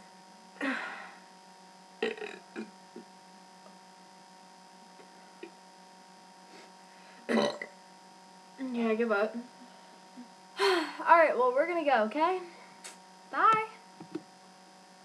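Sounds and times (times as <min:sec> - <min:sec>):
person burping: 0:02.0 - 0:03.1, 0:07.3 - 0:07.7.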